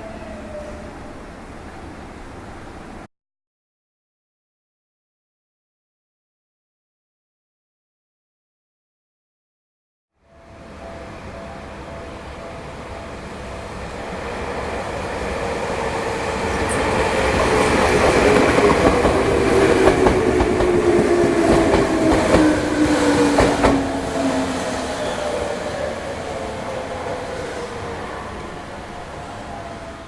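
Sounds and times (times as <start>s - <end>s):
train passing: 0.0s - 3.1s, 10.2s - 30.0s.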